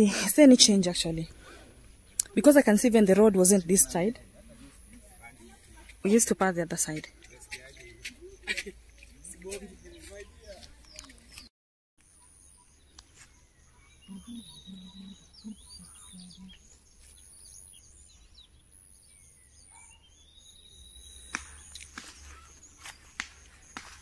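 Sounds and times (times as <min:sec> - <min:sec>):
birds chirping: 0:00.0 - 0:24.0
rising whistled bird calls: 0:12.5 - 0:23.9.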